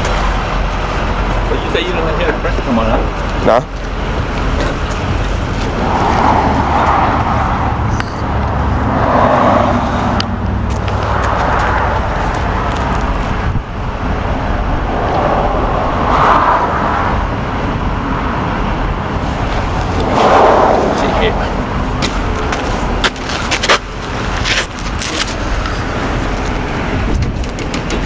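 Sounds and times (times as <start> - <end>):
pickup truck engine idling: 0.0 - 9.0
soft rushing noise: 4.3 - 23.6.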